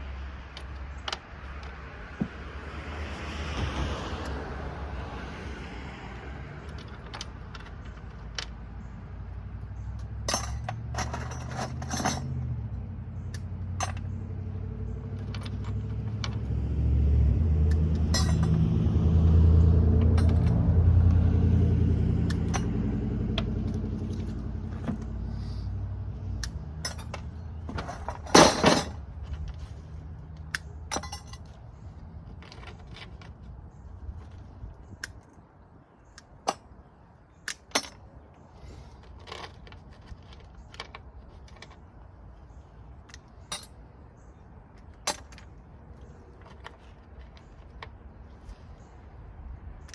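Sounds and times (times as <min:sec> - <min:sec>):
low engine hum: 0:00.0 - 0:35.9
metal scrap clinking: 0:10.2 - 0:12.5, 0:18.0 - 0:18.7, 0:26.4 - 0:29.6, 0:30.5 - 0:31.6.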